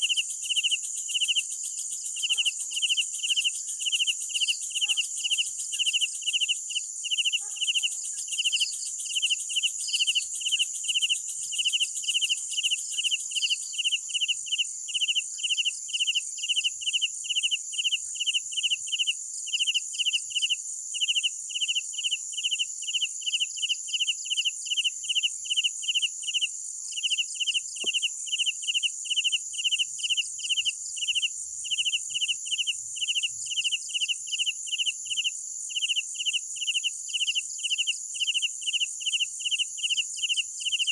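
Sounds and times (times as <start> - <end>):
cricket chirping: 0.0 - 40.9
high-pitched insect trill: 0.0 - 40.9.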